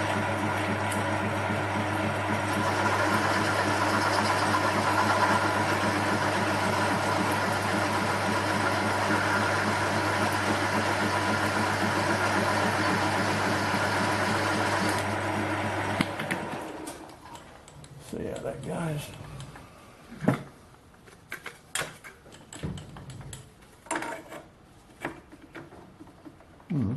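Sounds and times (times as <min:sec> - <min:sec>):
metal lathe cutting tube: 0:02.4 - 0:15.1.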